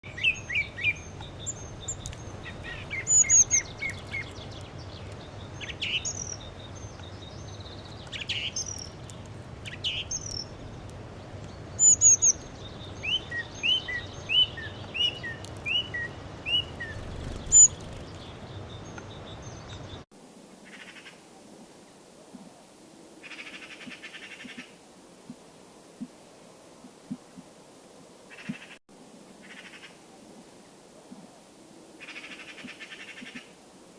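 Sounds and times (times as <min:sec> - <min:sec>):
songbirds chirping: 0:00.0 - 0:28.8
buzzy bird trills: 0:15.6 - 0:18.4.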